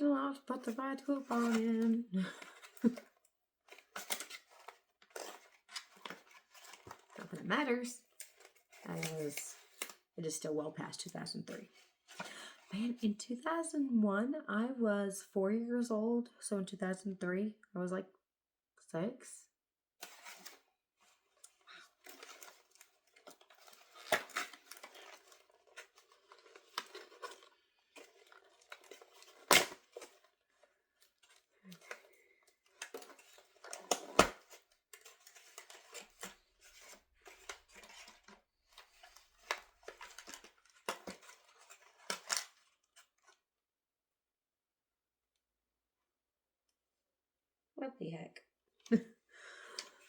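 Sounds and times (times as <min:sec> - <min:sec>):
cardboard and plastic rustling: 0:00.6 - 0:10.1, 0:20.0 - 0:43.4
sharp packaging clicks: 0:21.4 - 0:30.2.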